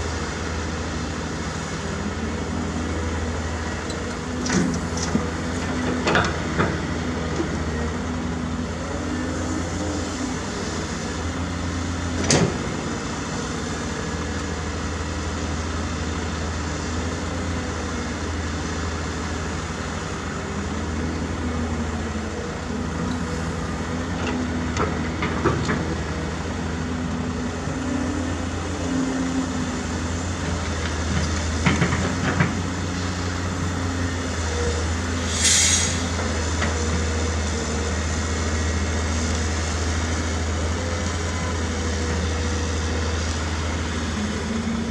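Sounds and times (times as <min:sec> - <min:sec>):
heavy machinery diesel engine: 0:00.0 - 0:44.9
short hiss: 0:35.3 - 0:36.1.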